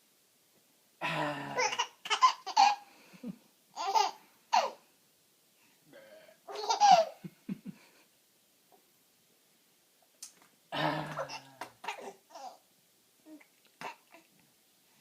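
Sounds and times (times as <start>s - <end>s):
man burping: 1.0s - 1.7s, 10.7s - 11.8s
baby giggling: 1.6s - 2.8s, 3.8s - 4.8s, 6.5s - 7.2s, 11.0s - 12.6s.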